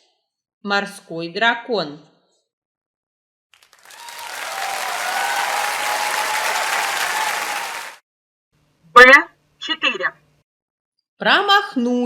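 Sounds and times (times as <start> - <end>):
crowd applause: 3.6 - 8.0.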